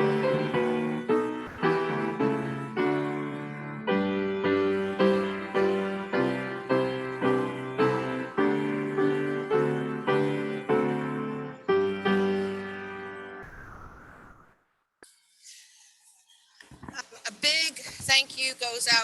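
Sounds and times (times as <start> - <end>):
piano playing slow chords: 0.0 - 13.4.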